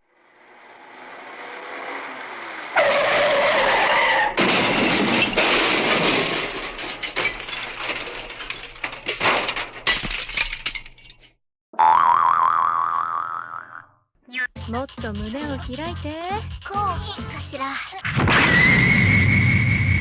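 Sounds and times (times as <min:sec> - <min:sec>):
car crash: 0:00.2 - 0:11.3, 0:18.0 - 0:20.0
tyre screech: 0:02.7 - 0:05.4, 0:18.1 - 0:20.0
debris clattering: 0:02.8 - 0:11.4.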